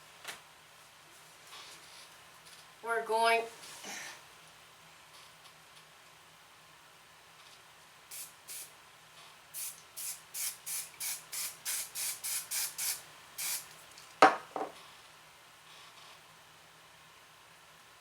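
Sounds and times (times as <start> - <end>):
hair spray bottle squirts: 9.6 - 13.7.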